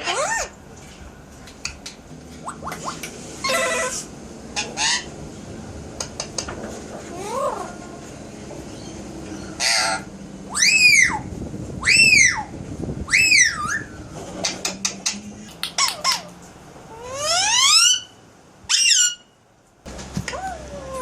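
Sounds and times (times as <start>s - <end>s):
parakeet screeching: 2.4s - 5.1s, 9.3s - 12.5s, 13.1s - 14.6s, 16.9s - 19.3s
parakeet squawk: 2.4s - 5.1s, 9.3s - 11.2s, 16.9s - 19.3s.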